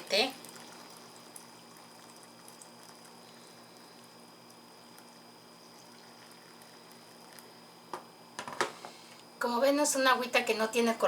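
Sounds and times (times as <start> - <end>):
tea pouring into cup: 0.0 - 7.8.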